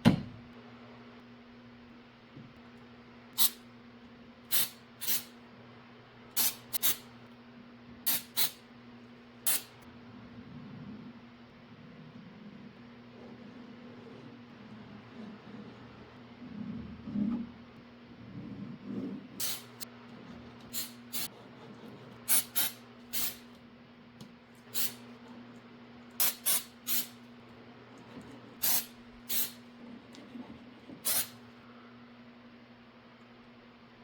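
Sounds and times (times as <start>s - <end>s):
steady low hum: 0.0s - 34.0s
sharp hissing scrapes: 26.2s - 27.2s, 28.6s - 29.6s, 31.0s - 31.4s.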